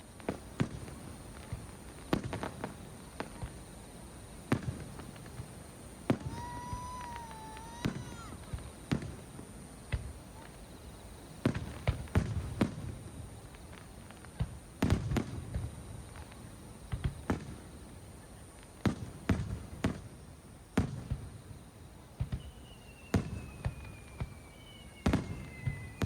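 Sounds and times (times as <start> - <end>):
fireworks bangs: 0.2 - 3.7, 4.4 - 17.9, 18.8 - 26.0
high whistle: 6.2 - 8.4, 22.2 - 26.0.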